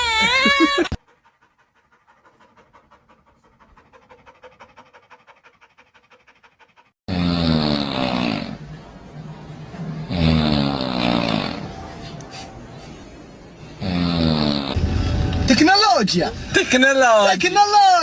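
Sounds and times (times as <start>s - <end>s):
rapid breathy panting: 0.8s - 7.0s.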